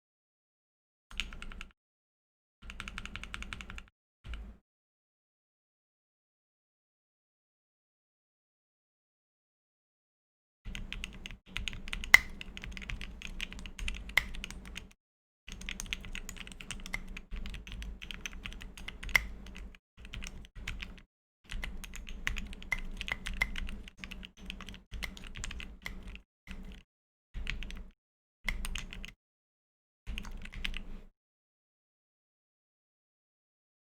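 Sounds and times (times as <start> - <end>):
mechanical keyboard typing: 1.2 - 1.7, 2.7 - 4.4, 10.7 - 26.8, 27.4 - 27.9, 28.5 - 29.2, 30.1 - 30.9.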